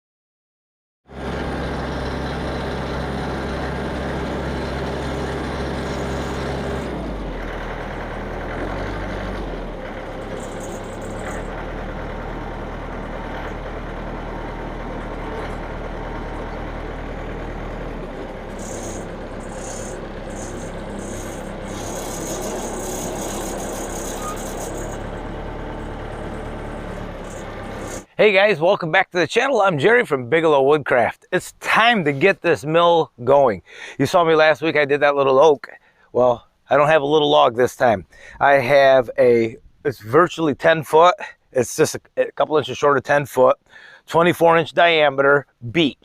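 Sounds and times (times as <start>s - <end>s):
engine running: 1.1s - 28.2s.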